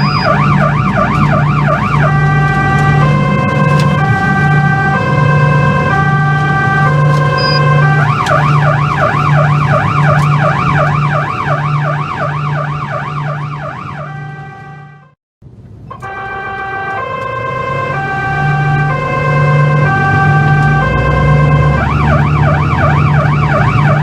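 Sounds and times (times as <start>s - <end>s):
police siren: 0.0s - 15.2s, 15.9s - 24.0s.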